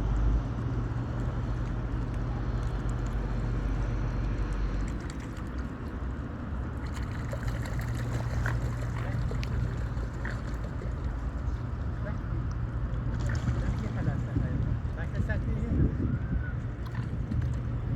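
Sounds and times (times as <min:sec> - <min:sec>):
water trickling and sloshing: 0:00.1 - 0:17.9.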